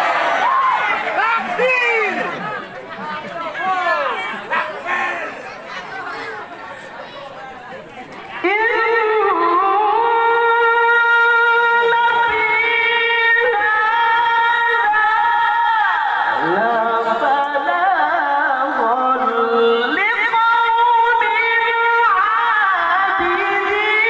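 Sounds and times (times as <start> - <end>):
person reciting melodically: 8.4 - 24.0.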